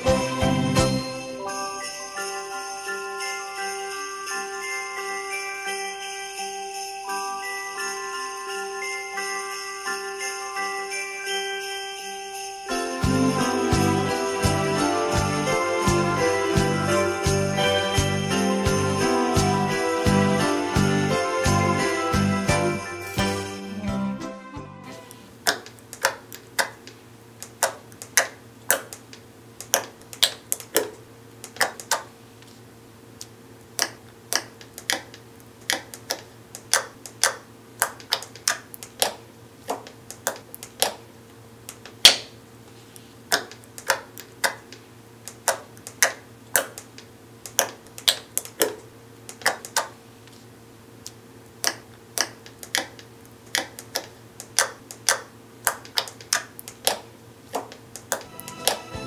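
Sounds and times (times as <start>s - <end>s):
faint steady hum: 24.9s - 59.0s.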